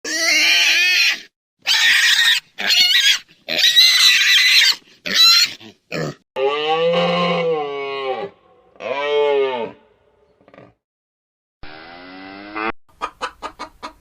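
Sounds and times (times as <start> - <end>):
pig squealing: 0.0 - 9.8, 11.6 - 12.7
low drawn-out animal call: 11.6 - 12.7.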